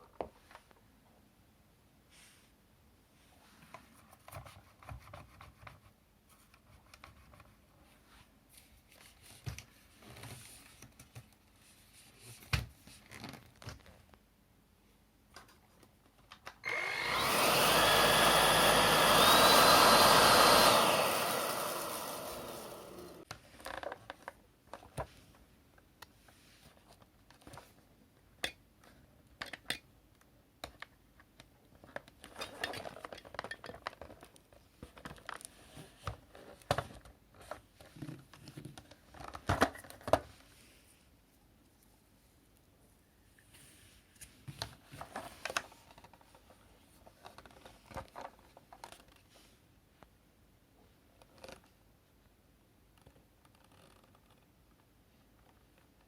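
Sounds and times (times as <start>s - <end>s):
vacuum motor whine: 16.6s - 23.2s.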